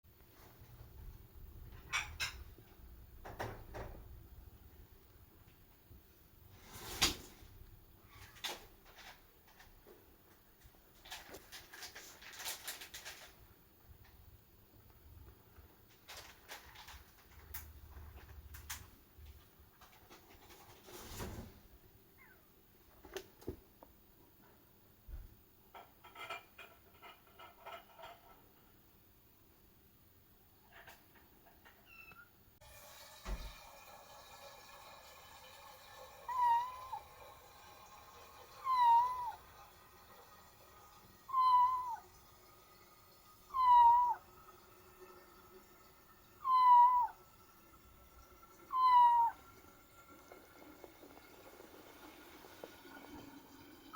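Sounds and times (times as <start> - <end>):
light clicks and scratches: 8.1 - 14.2, 15.6 - 21.6
kitten squeaking: 31.8 - 32.3, 36.3 - 37.0, 38.6 - 39.4, 41.3 - 42.0, 43.5 - 44.2, 46.4 - 47.2, 48.7 - 49.4.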